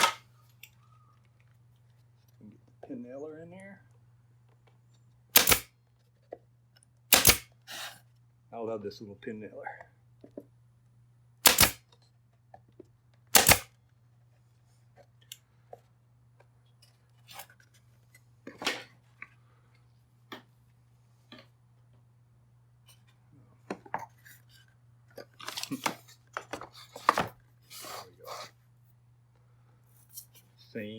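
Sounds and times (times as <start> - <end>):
pin nailer firing: 0.0 - 0.2, 5.3 - 5.7, 7.1 - 7.9, 11.4 - 11.8, 13.3 - 13.7
wood handling noise: 0.0 - 0.2.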